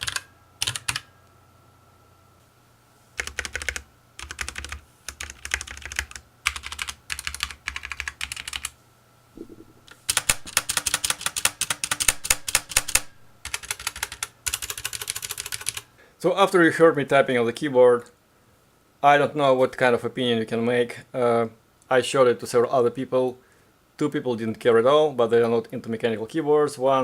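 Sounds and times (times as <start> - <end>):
mechanical keyboard typing: 0.0 - 1.1, 3.2 - 8.7, 10.1 - 15.9.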